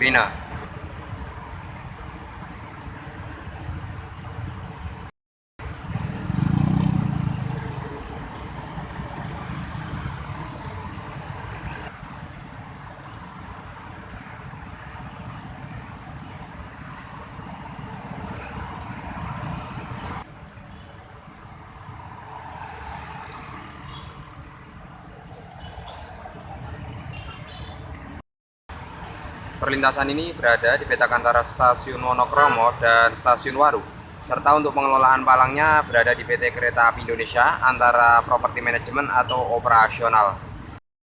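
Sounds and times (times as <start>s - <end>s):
road traffic passing: 0.0s - 40.8s
vehicle passing close: 5.7s - 12.0s.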